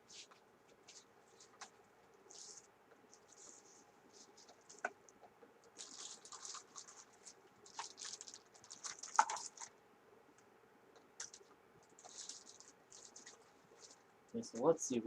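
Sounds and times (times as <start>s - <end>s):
packaging rustling and scratching: 0.1s - 4.9s, 5.8s - 9.7s, 11.2s - 14.0s.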